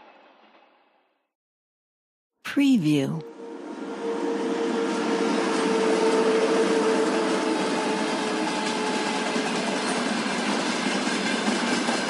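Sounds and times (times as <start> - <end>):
train rushing rail noise: 3.3 - 12.0.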